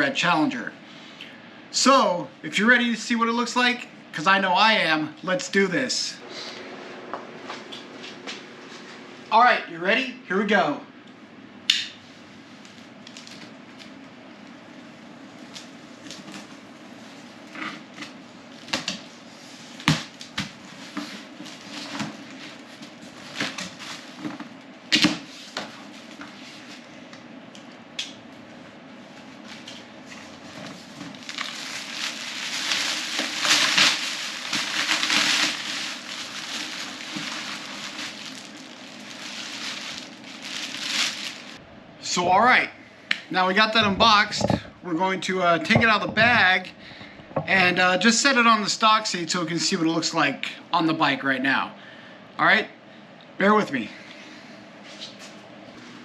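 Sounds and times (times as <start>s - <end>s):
packing material rustling: 19.7s - 24.5s, 29.3s - 41.6s.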